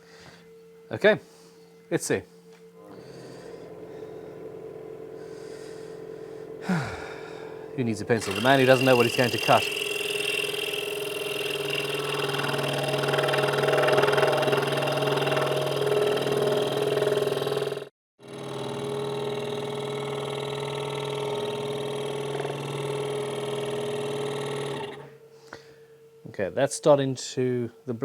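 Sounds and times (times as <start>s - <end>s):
scroll saw cutting wood: 8.0s - 25.2s.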